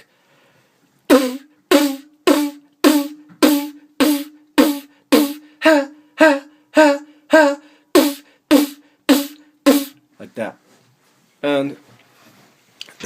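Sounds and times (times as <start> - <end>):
beatboxed snare drum hits: 1.1 - 5.4, 8.0 - 10.0.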